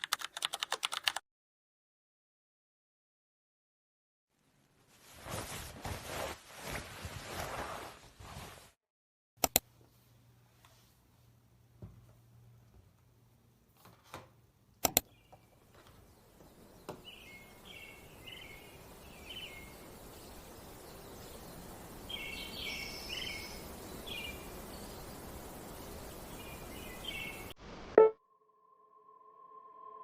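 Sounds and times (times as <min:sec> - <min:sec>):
sharp clicks: 0:09.4 - 0:09.7, 0:14.8 - 0:15.1
outdoor background hiss: 0:14.4 - 0:27.5
small birds chirping: 0:15.0 - 0:27.5.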